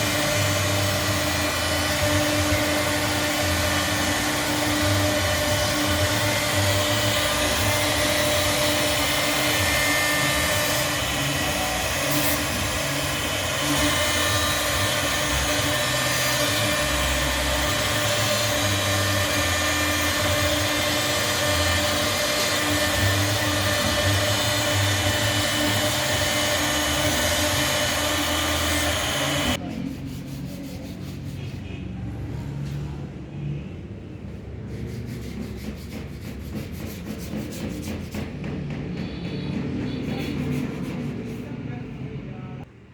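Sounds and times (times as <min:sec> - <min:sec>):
router spindle whirring: 0:00.0 - 0:29.6.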